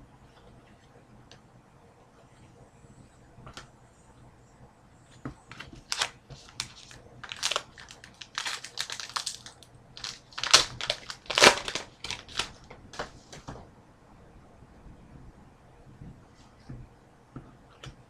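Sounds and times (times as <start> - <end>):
wrapper crinkling: 5.6 - 12.6.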